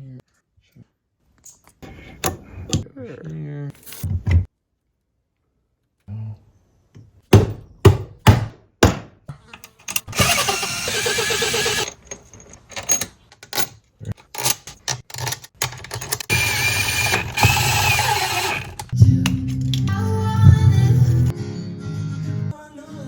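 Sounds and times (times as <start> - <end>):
power tool running: 10.0 - 11.9, 16.3 - 19.0.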